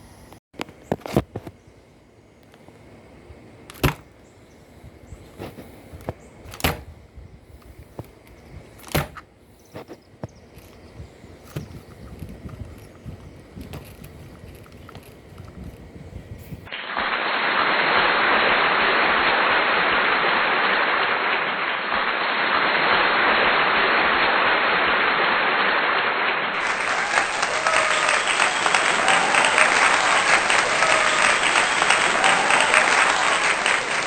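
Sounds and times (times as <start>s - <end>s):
crowd applause: 17.9s - 34.0s
faint voices: 26.6s - 34.0s.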